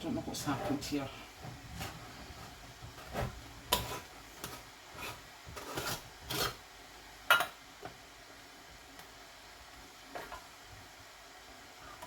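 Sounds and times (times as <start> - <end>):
metal lid scraping on glass jar: 5.0 - 6.6.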